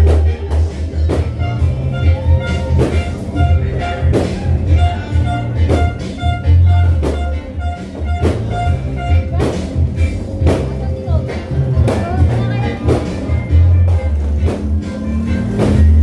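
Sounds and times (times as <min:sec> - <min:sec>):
dance music through speakers: 0:00.0 - 0:16.0.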